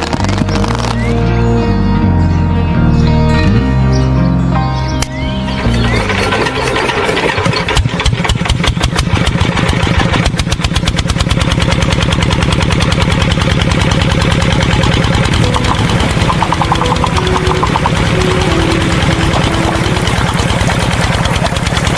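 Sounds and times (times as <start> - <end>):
engine idling: 5.0 - 21.9.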